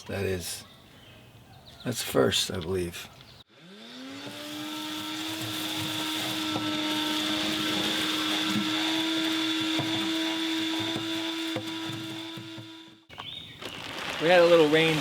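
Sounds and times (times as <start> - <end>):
shop vacuum running: 3.5 - 13.1
debris rattling in vacuum: 4.9 - 12.1, 13.6 - 15.0.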